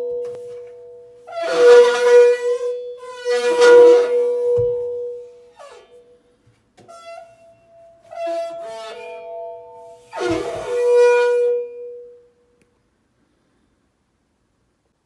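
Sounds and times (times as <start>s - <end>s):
washing machine drum squealing: 1.3s - 5.9s, 6.8s - 11.8s.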